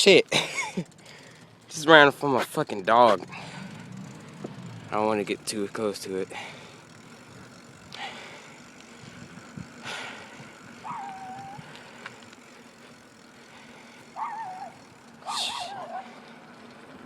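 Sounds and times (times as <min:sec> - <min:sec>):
distant traffic hum: 0:00.0 - 0:17.0
wavering high-pitched cries: 0:10.8 - 0:11.8, 0:14.2 - 0:16.1.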